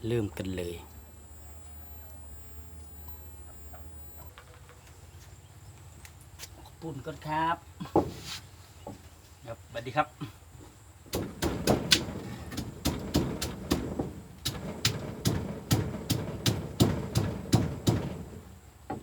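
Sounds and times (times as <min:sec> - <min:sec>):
pestle pounding in a mortar: 0:11.2 - 0:18.2.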